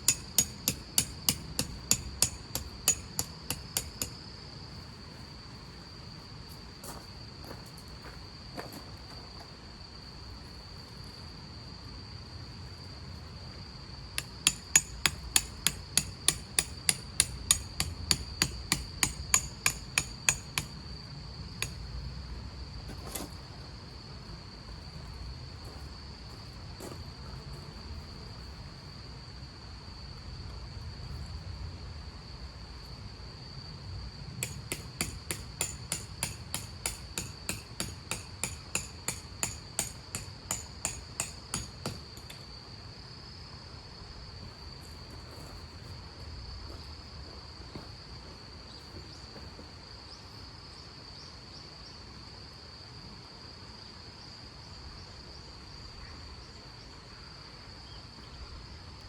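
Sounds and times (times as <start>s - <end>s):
hammer ringing on metal: 0.1s - 4.0s.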